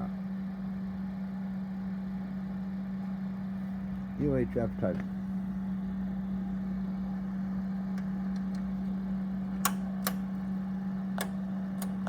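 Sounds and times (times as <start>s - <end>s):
radio hum with hiss: 3.8s - 8.9s.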